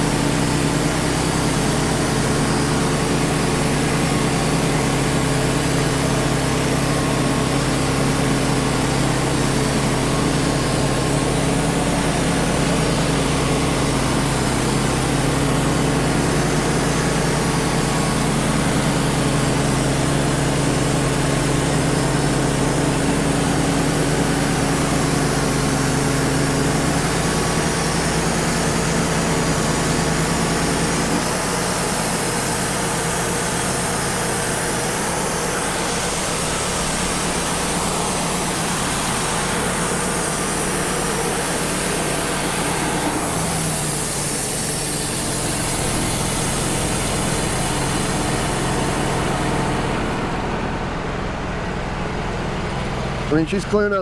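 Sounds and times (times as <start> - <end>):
blower running: 0.0 - 54.0
sawmill engine humming: 0.0 - 54.0.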